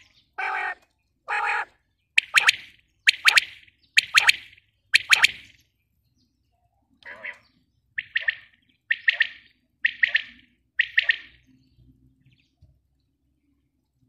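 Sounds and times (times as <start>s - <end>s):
quail calling: 0.0s - 5.5s, 7.0s - 11.5s.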